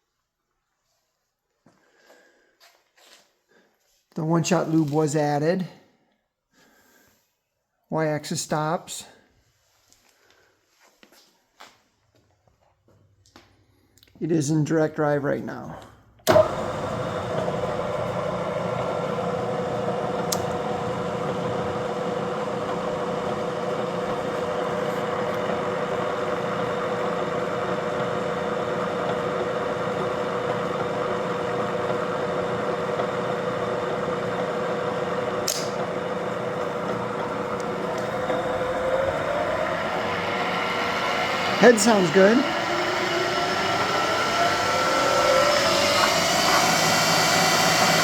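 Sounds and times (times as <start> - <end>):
milling machine motor whine: 16.2 - 48.0
rising whine: 35.5 - 48.0.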